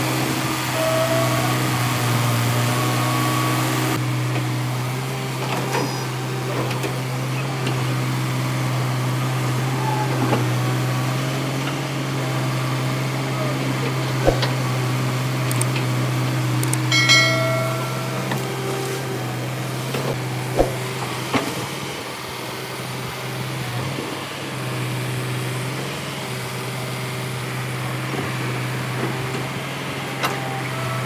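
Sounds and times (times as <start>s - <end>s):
excavator diesel engine running: 0.0s - 21.0s
brief high-pitched sound: 17.0s - 18.6s.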